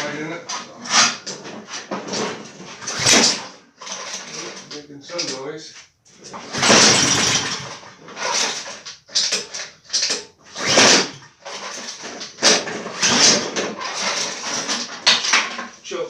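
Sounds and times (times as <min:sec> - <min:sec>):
mower engine firing roughly: 0:02.7 - 0:04.6, 0:06.4 - 0:15.3.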